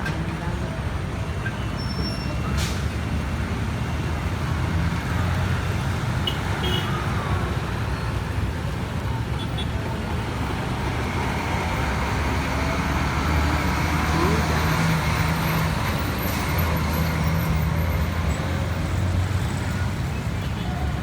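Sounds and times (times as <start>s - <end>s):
road rumble: 0.0s - 21.0s
vehicle engines droning: 0.0s - 21.0s.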